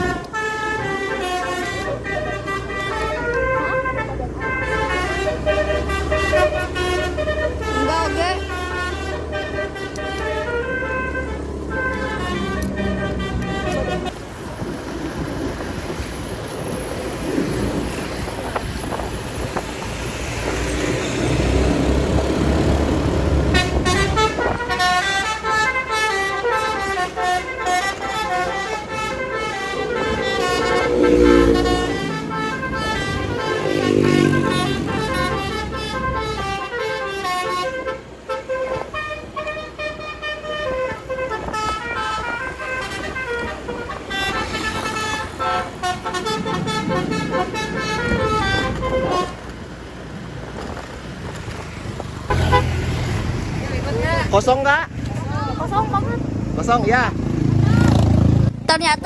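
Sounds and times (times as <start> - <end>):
multi-tone musical horn: 0.0 - 14.2, 21.0 - 49.5, 52.3 - 53.1
minibus engine: 0.0 - 59.0
traffic noise: 0.0 - 59.0.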